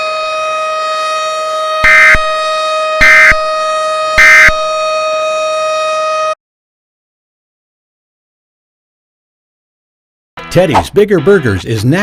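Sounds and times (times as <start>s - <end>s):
siren-like alert drone: 0.0s - 6.4s.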